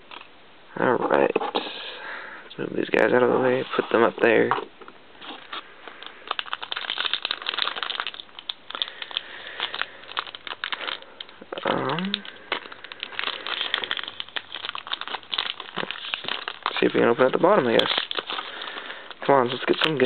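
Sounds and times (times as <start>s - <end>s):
foil wrapper crinkling: 5.2s - 20.0s.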